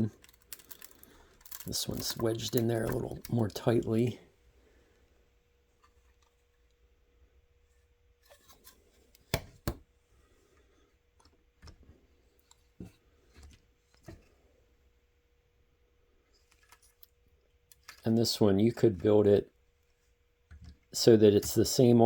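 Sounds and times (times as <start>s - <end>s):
plastic bricks clicking and knocking: 0.1s - 3.6s.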